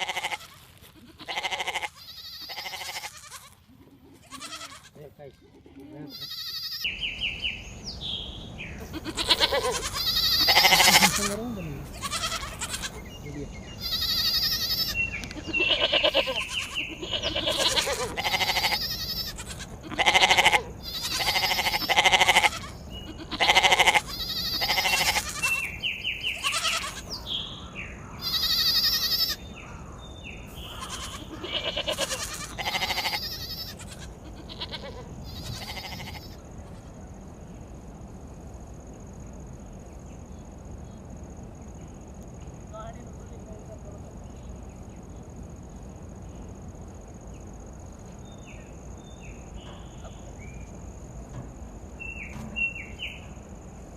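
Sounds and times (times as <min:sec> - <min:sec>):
sheep bleating: 0:00.0 - 0:06.9, 0:08.8 - 0:13.1, 0:13.8 - 0:25.7, 0:26.3 - 0:27.1, 0:28.2 - 0:29.4, 0:30.6 - 0:36.9.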